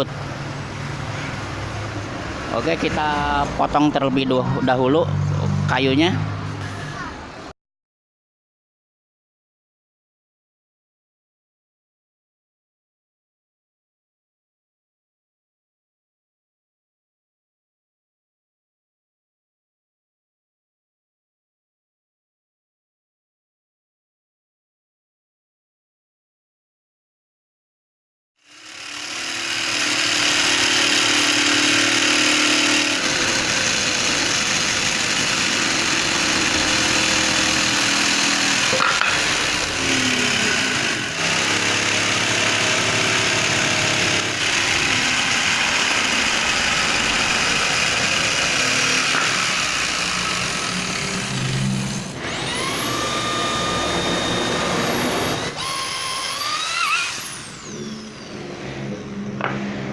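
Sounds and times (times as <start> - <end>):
power tool cutting wood: 28.4 - 59.6.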